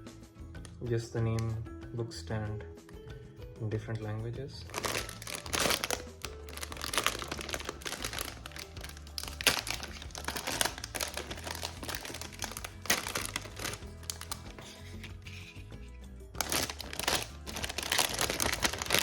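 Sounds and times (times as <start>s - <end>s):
background music: 0.0s - 19.0s
packaging crinkling: 4.7s - 15.6s, 16.4s - 19.0s.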